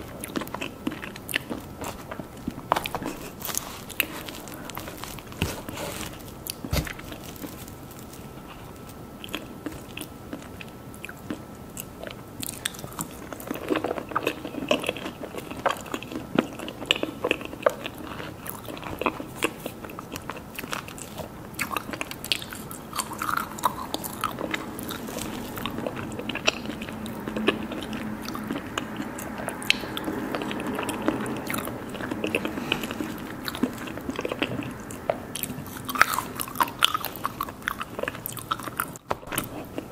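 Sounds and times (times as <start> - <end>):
chewing with small crunches: 0.0 - 39.9.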